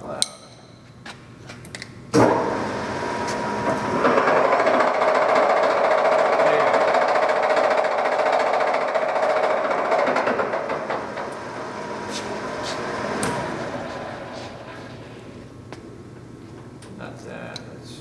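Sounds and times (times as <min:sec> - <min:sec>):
lathe gearbox clattering: 0:02.2 - 0:15.8.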